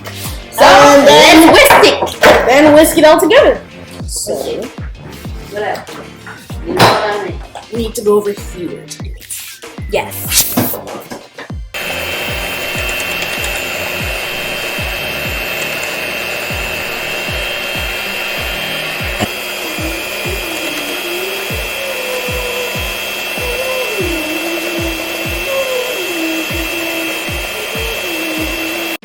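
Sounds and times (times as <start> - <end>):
rasping whirring noise: 11.8 - 29.0
wandering melody: 11.8 - 29.0.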